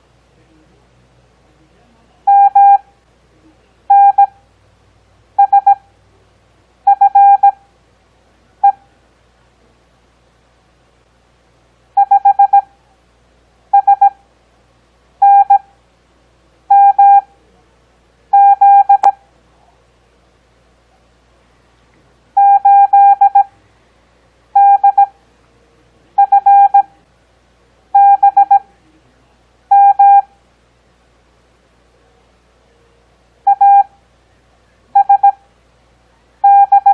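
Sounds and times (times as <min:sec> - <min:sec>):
morse code beeps: 0:02.3 - 0:02.8, 0:03.9 - 0:04.4, 0:05.4 - 0:05.8, 0:06.9 - 0:07.6, 0:08.6 - 0:08.8, 0:12.0 - 0:12.7, 0:13.7 - 0:14.2, 0:15.2 - 0:15.6, 0:16.7 - 0:17.3, 0:18.3 - 0:19.2, 0:22.4 - 0:23.5, 0:24.6 - 0:25.2, 0:26.2 - 0:26.9, 0:28.0 - 0:28.7, 0:29.7 - 0:30.3, 0:33.5 - 0:34.0, 0:34.9 - 0:35.4, 0:36.4 - 0:36.9.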